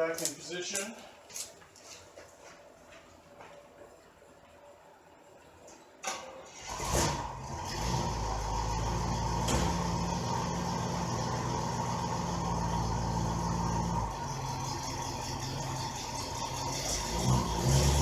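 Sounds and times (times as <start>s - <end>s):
car engine starting: 6.5s - 18.0s.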